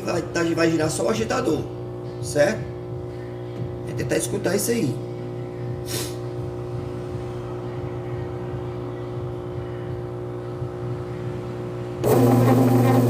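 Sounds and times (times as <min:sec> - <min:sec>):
washing machine motor hum: 0:06.3 - 0:13.0.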